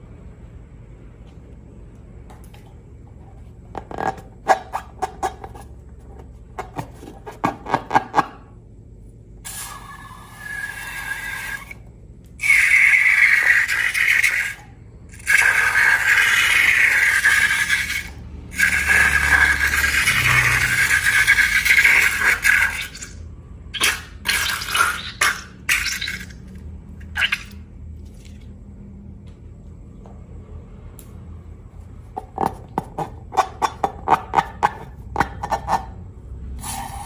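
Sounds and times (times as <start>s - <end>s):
liquid pouring into container: 12.4s - 23.2s, 23.8s - 28.6s.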